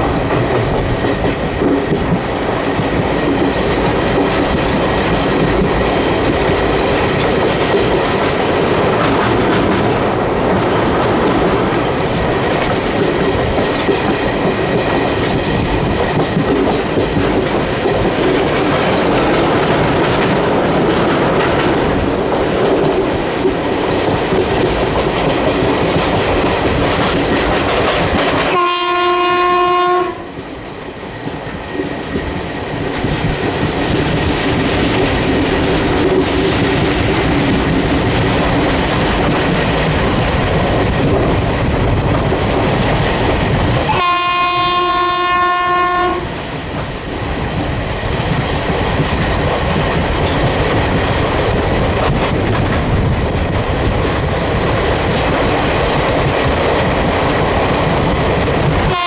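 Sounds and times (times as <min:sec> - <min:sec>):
train wheels clattering on track: 0:00.0 - 0:59.0
locomotive horn blasts: 0:28.5 - 0:30.3, 0:43.9 - 0:46.3.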